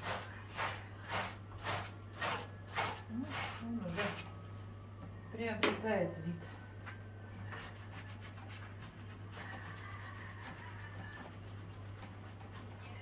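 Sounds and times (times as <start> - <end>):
scrubbing fireplace surface: 0.0 - 4.2.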